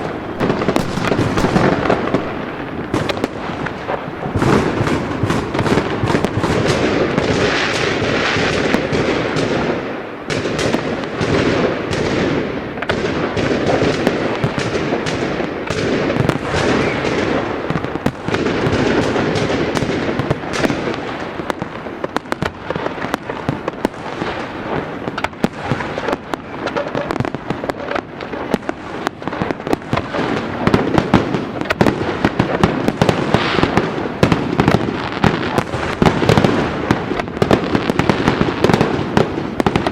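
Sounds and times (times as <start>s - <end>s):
continuous rumble: 0.0s - 7.1s
firework bangs and crackling: 0.0s - 39.9s.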